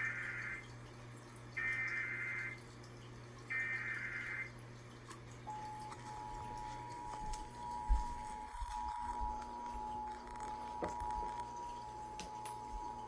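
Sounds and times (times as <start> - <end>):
screechy digital data tones: 1.6 - 2.6, 3.5 - 4.5
two-tone attention signal: 5.5 - 13.0.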